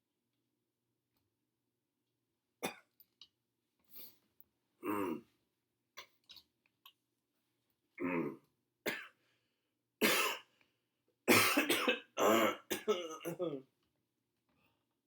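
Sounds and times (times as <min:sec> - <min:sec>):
person coughing: 0:10.0 - 0:10.4, 0:11.3 - 0:13.6.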